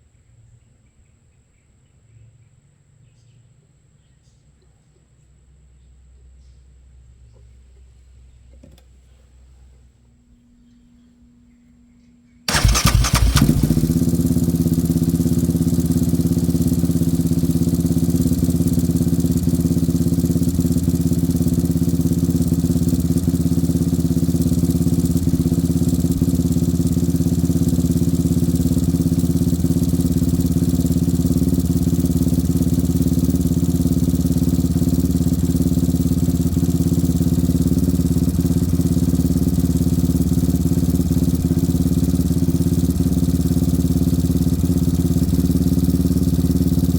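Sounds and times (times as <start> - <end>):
atv engine starting and idling: 12.5 - 46.9.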